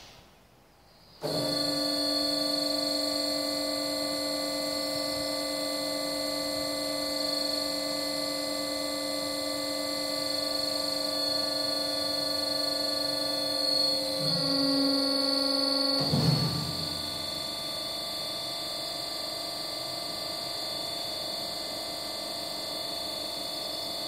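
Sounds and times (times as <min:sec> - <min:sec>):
bandsaw whine: 0:11.6 - 0:17.5.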